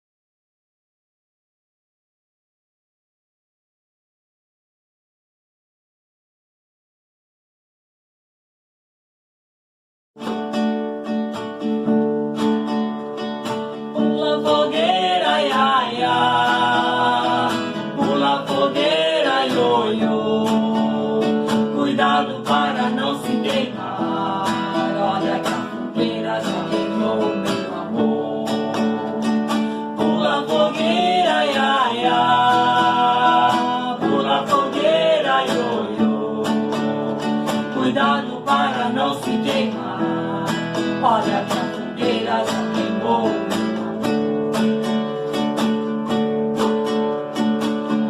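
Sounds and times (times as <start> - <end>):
guitar and plucked strings: 10.2 - 48.0.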